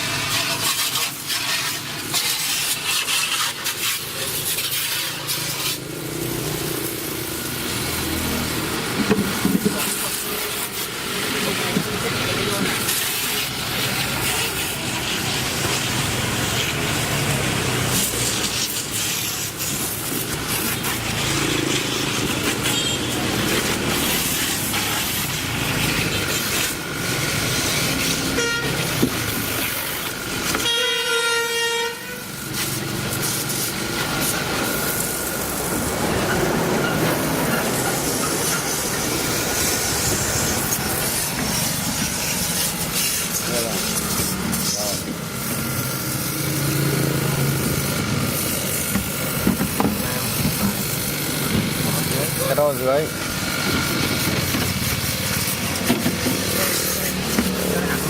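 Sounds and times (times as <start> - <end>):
loud rushing hiss: 0.0 - 58.0
short horn honk: 28.3 - 28.9, 30.6 - 32.3.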